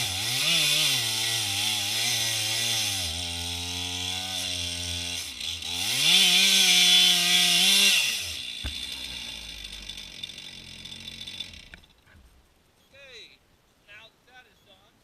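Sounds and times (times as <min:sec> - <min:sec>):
chainsaw revving: 0:00.0 - 0:12.0
sharp knock: 0:08.6 - 0:09.3.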